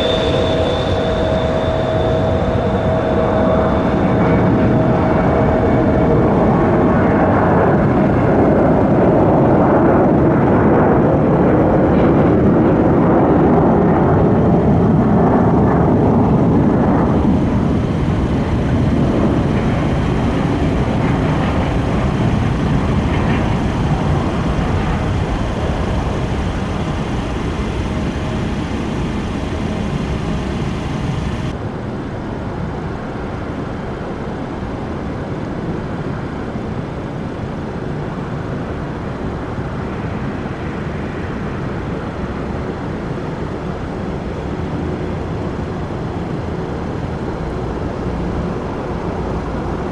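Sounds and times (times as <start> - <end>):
jet engine noise: 0.0 - 49.9.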